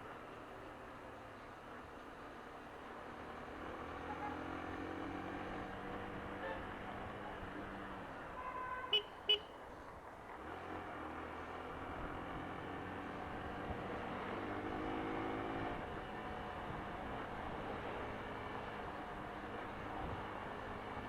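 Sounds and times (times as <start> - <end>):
road noise: 0.0 - 21.0
vehicle horn beeps: 6.4 - 6.7, 8.4 - 9.5.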